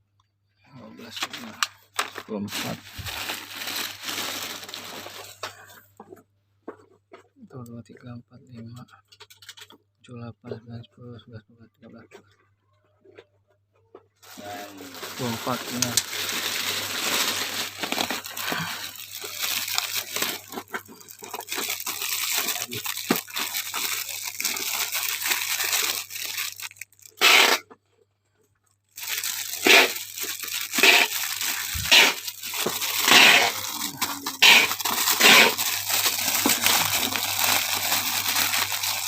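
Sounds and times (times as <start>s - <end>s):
packaging tearing and crinkling: 1.0s - 5.6s, 14.2s - 27.7s, 29.0s - 39.0s.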